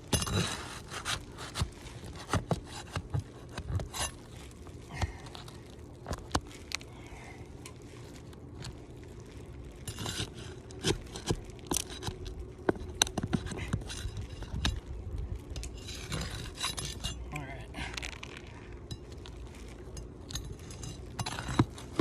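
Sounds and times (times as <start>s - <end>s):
metal scraper scraping roof shingles: 0.1s - 4.3s, 9.9s - 14.7s, 15.6s - 17.2s, 20.5s - 22.0s.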